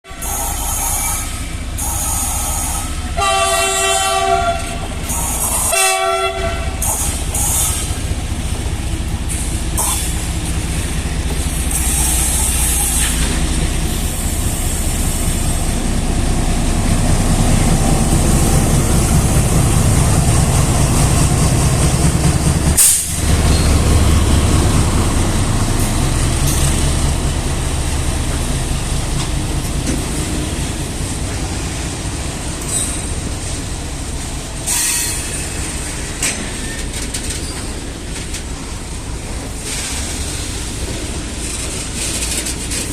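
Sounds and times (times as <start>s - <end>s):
train wheels rumbling on rails: 0.1s - 42.9s
locomotive horn: 2.1s - 4.9s, 5.6s - 7.0s.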